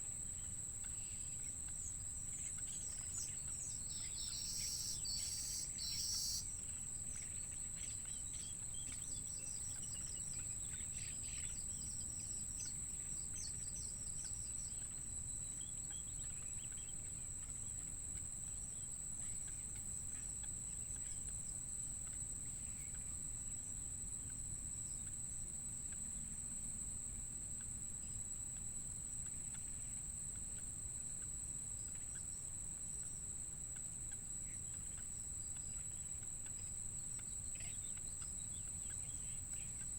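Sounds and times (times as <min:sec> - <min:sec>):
high-pitched insect drone: 0:02.4 - 0:06.6
birds chirping: 0:02.6 - 0:06.6.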